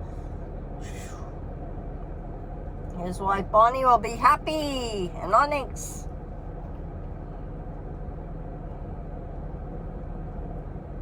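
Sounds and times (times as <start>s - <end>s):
car cabin rumble and hum: 0.0s - 11.0s.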